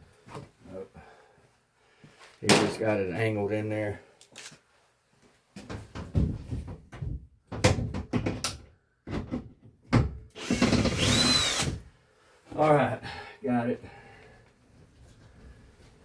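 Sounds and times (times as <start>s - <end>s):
power drill whining: 10.3s - 11.8s.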